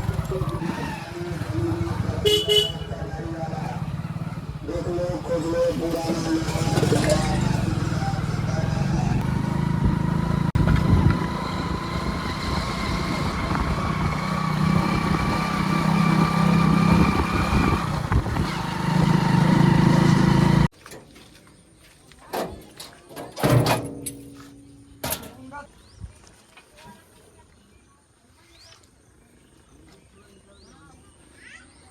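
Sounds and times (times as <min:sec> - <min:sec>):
heavy diesel engine running: 0:00.0 - 0:20.7.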